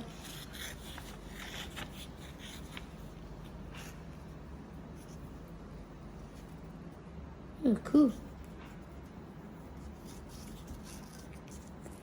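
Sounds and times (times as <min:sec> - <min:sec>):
paper tearing: 0:00.0 - 0:03.0.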